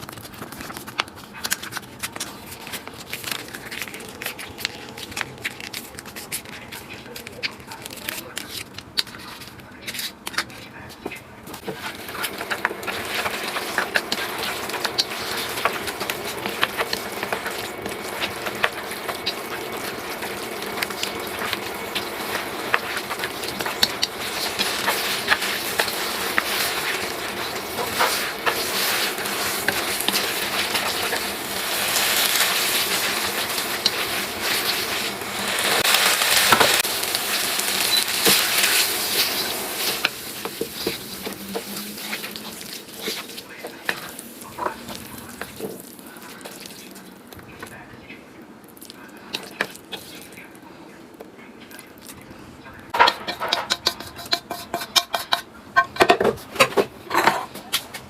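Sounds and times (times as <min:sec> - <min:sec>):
utensil stirring and clicking on pan: 0:00.0 - 0:47.8, 0:48.8 - 0:50.4, 0:52.9 - 0:58.0
food sizzling in a pan: 0:11.5 - 0:47.1.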